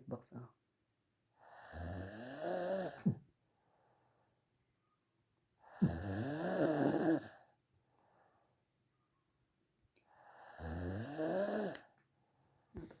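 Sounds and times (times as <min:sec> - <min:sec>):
person snoring loudly: 0:01.6 - 0:03.1, 0:05.7 - 0:07.4, 0:10.4 - 0:11.8
faint breaths: 0:02.9 - 0:04.5, 0:07.2 - 0:08.7.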